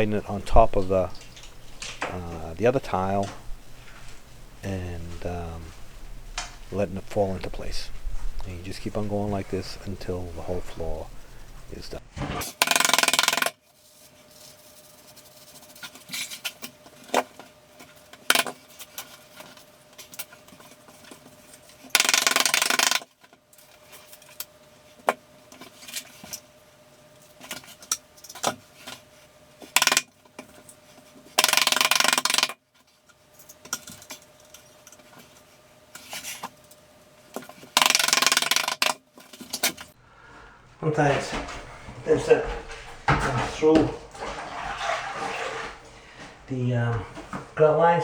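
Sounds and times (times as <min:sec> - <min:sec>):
small tiles clinking together: 0:12.5 - 0:13.6, 0:22.0 - 0:23.1, 0:31.4 - 0:32.6, 0:37.7 - 0:39.0
tile scraping: 0:41.1 - 0:46.5.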